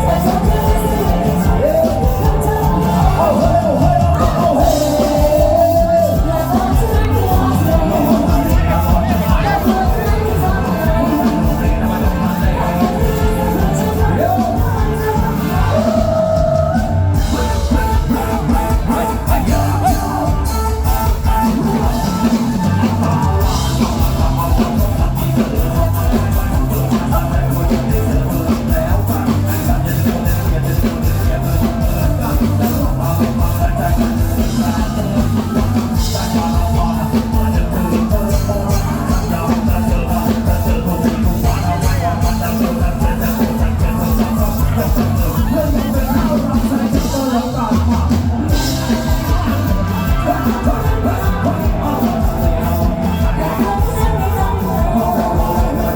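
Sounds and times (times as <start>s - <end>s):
drum kit beat: 0.0s - 55.9s
live band music: 0.0s - 55.9s
person singing: 0.0s - 55.9s.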